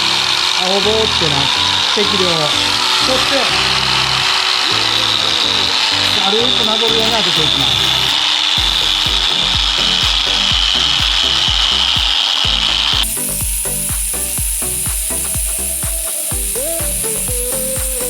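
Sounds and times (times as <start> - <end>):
buffing wheel whine: 0.0 - 18.0
background music with beat: 5.1 - 18.0.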